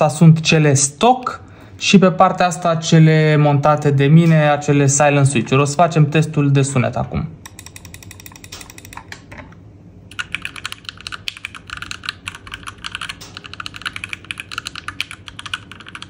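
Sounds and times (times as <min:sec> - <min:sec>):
mechanical keyboard typing: 0:07.4 - 0:09.2, 0:10.1 - 0:16.0.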